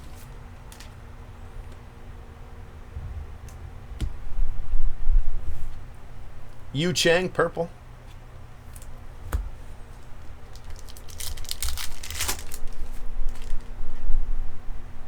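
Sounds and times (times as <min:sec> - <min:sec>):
foil wrappers crinkling: 0:09.9 - 0:13.8
wrapper tearing: 0:10.4 - 0:13.7.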